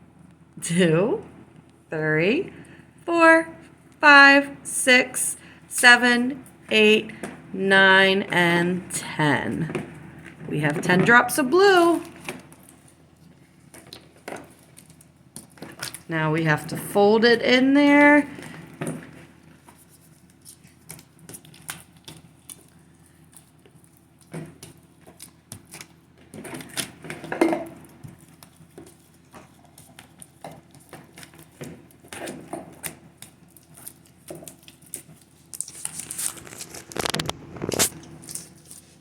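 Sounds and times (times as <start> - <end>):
slime squishing and crackling: 11.8 - 16.1, 18.5 - 38.8.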